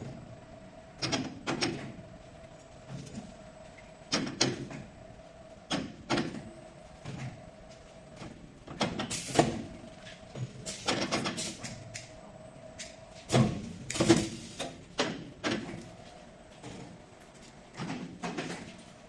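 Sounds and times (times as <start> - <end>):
machine clunks and clacks: 1.0 - 2.0, 4.1 - 4.9, 5.7 - 7.4, 8.2 - 12.1, 12.8 - 15.9, 17.7 - 18.8.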